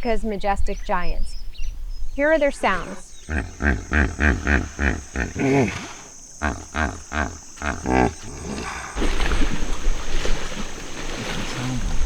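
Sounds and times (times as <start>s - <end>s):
hippopotamus honking grunts: 2.5s - 12.0s.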